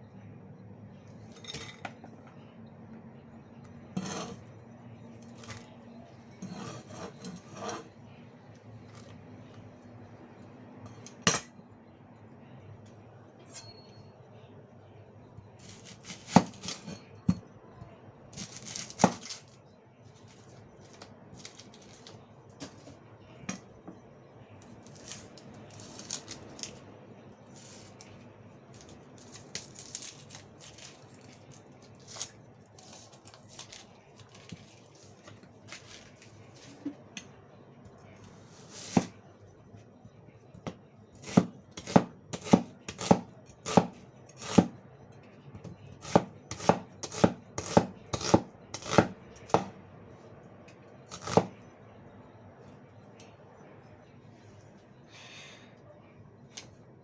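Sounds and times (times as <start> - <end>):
knife chopping onion on board: 15.6 - 17.4, 18.4 - 19.3, 40.6 - 44.8, 45.6 - 49.8, 51.1 - 51.6.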